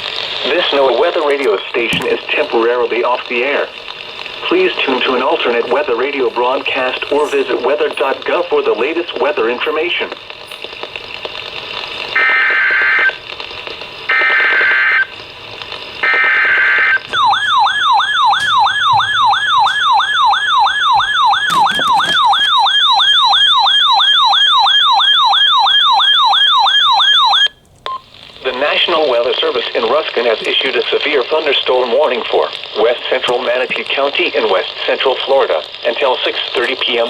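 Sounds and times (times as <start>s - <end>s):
harsh digital data buzz: 15.8s - 24.6s
alert siren rising whoop: 17.1s - 21.5s.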